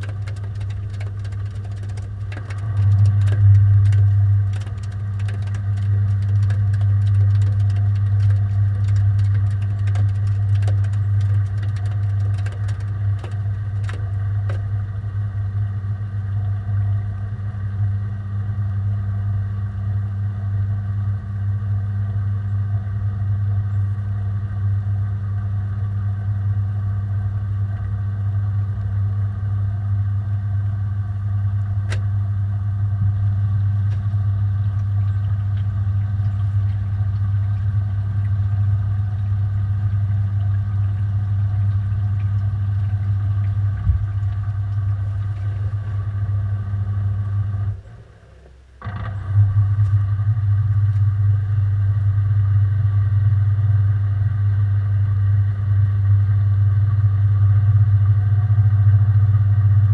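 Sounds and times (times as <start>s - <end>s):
ticks and clicks: 0.0s - 14.7s
washing machine drum spinning: 0.0s - 15.1s, 32.9s - 47.8s.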